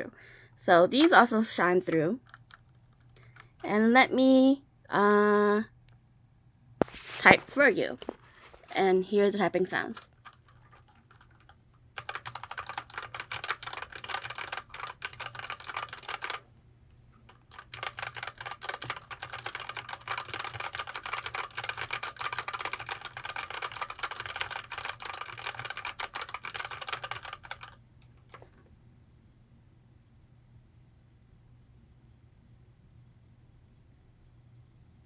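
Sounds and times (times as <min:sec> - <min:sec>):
fast typing on mechanical keyboard: 0:00.9 - 0:03.6, 0:10.1 - 0:16.4, 0:17.3 - 0:28.6.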